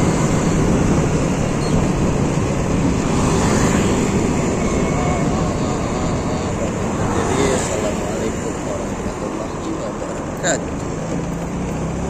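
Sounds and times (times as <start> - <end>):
wind on microphone: 0.0 - 7.3
scooter engine and road noise: 0.0 - 12.0.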